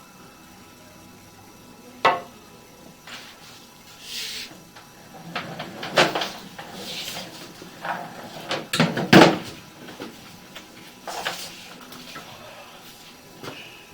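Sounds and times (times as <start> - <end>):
objects clunking and scraping: 2.0 - 2.3, 2.9 - 13.7.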